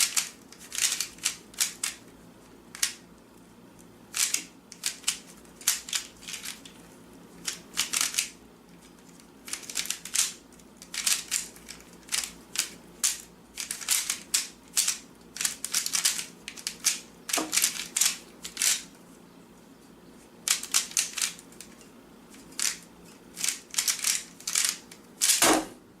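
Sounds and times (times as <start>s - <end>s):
plastic puzzle cube clicking: 0.0s - 2.0s, 9.5s - 18.8s, 23.4s - 25.4s.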